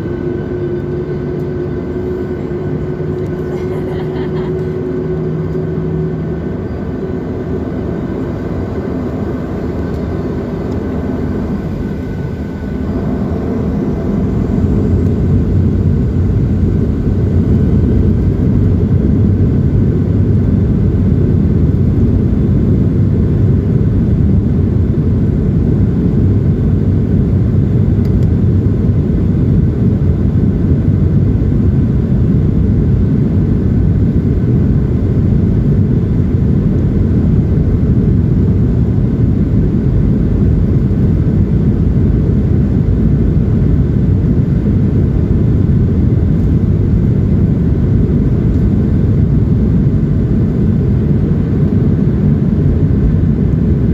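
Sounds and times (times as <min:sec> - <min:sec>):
jet engines spooling up: 0:00.0 - 0:20.5
cabin hum: 0:00.0 - 0:24.2.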